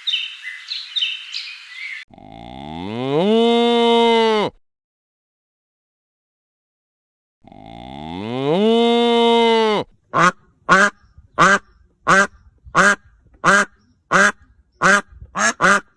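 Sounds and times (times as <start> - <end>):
long rising animal call: 2.1 - 4.6, 7.4 - 9.9
duck quacks: 9.7 - 15.9.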